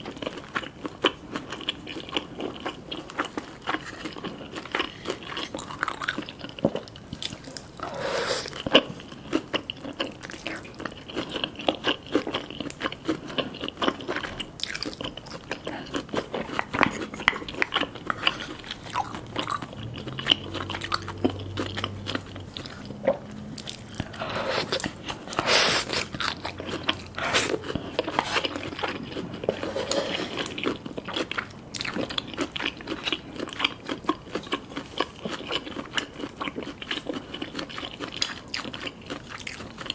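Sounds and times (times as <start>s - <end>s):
crunchy bites and chewing: 0.0s - 39.9s.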